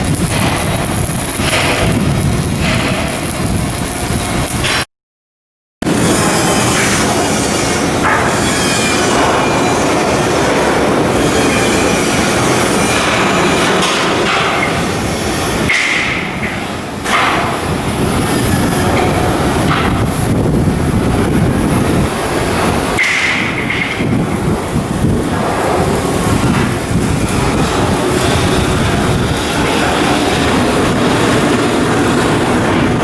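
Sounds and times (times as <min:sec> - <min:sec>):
metalwork machinery rumbling clatter: 0:00.0 - 0:04.9, 0:05.8 - 0:33.0
high metallic screeches: 0:05.9 - 0:13.8.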